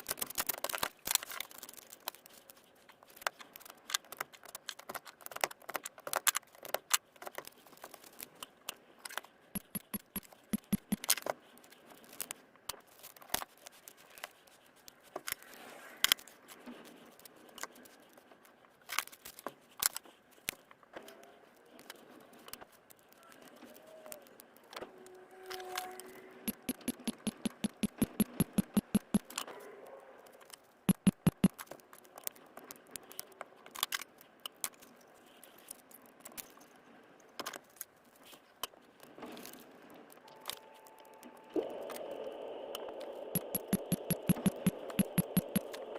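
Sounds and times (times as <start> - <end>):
clicks taps and rattles: 9.1 - 11.3, 26.4 - 29.4, 30.9 - 31.8, 43.3 - 45.9.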